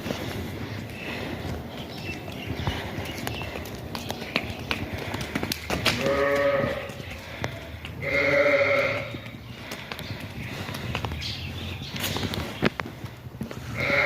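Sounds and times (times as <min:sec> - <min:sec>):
sheep bleating: 0:06.0 - 0:07.0, 0:08.0 - 0:09.2, 0:13.7 - 0:14.0.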